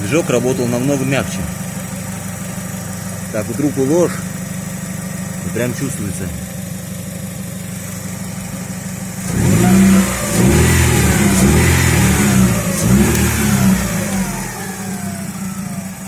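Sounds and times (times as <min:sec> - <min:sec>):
person speaking: 0:00.0 - 0:01.6, 0:03.3 - 0:04.3, 0:05.4 - 0:06.5
car engine idling and revving: 0:00.0 - 0:16.0.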